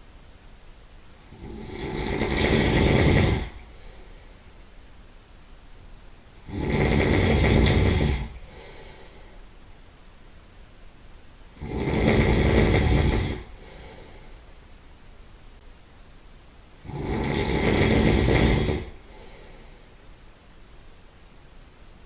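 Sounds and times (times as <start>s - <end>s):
person snoring: 1.2s - 4.4s, 6.4s - 9.4s, 11.5s - 14.4s, 16.8s - 20.0s
faint breath: 3.4s - 4.7s, 7.8s - 9.6s, 13.1s - 14.6s, 18.8s - 20.2s.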